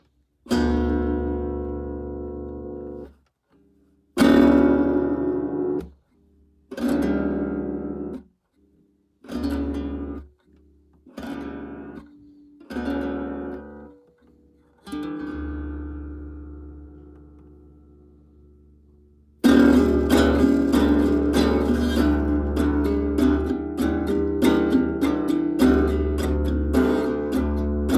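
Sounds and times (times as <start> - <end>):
acoustic guitar chords strummed: 19.4 - 27.9.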